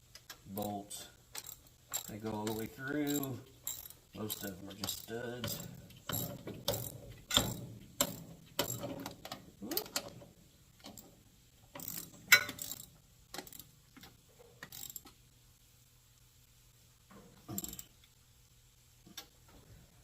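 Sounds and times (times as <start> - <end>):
ratchet wrench clicking: 1.3 - 8.9, 11.8 - 13.7, 14.6 - 15.1.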